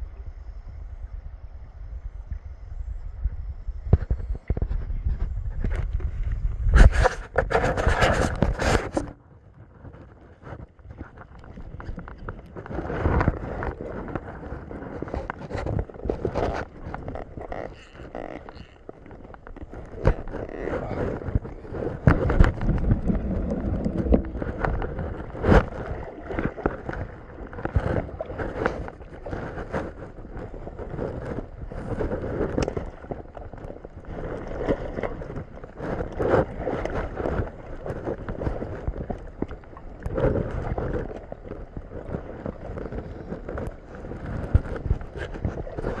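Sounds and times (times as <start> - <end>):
wind buffeting microphone: 0.0 - 46.0
water sloshing and splashing: 6.8 - 46.0
knocks and bumps: 22.0 - 25.7.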